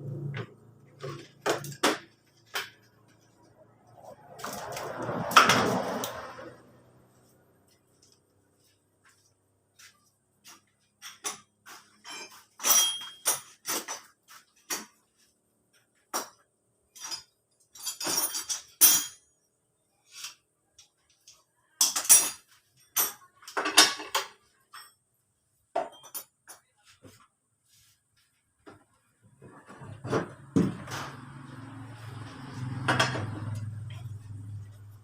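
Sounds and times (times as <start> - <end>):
metal tools clinking and clanking: 11.0 - 15.0, 16.9 - 19.4, 21.1 - 25.0, 25.8 - 26.7.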